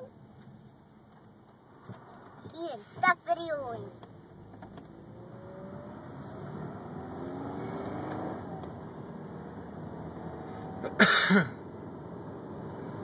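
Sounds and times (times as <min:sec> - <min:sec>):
road noise inside car: 0:00.0 - 0:13.0
car engine accelerating: 0:03.9 - 0:13.0.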